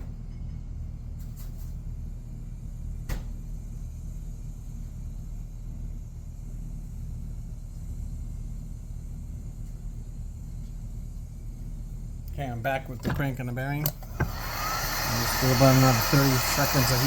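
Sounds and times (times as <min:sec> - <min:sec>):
hot air gun running: 0:12.9 - 0:17.0.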